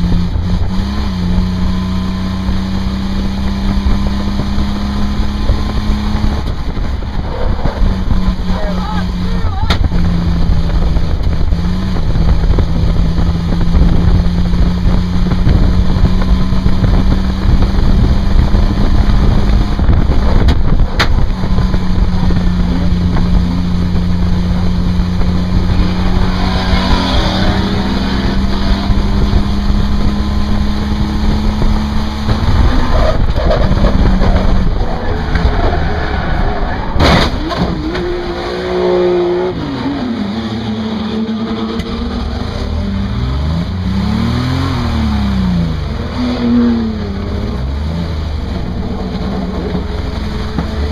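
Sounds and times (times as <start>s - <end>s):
wind buffeting microphone: 0.0s - 40.3s
race car engine: 0.0s - 50.9s.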